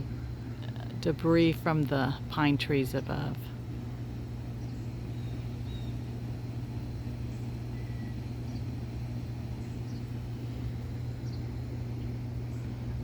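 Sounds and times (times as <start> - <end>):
low machine hum: 0.0 - 13.0
faint bird chirps: 4.6 - 6.0, 7.3 - 8.7.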